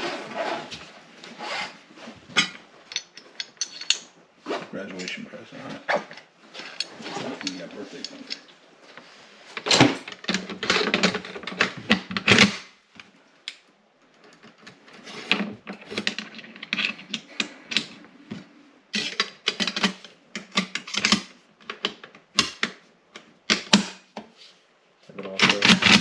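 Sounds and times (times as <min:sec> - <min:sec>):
rifle parts clicking and clacking: 0:02.4 - 0:04.1.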